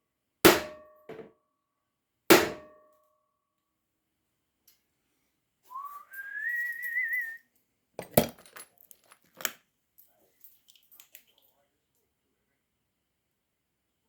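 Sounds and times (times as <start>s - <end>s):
sharp knock: 2.3s - 2.8s
man whistling: 5.7s - 7.4s
metallic taps and clinks: 8.0s - 9.6s.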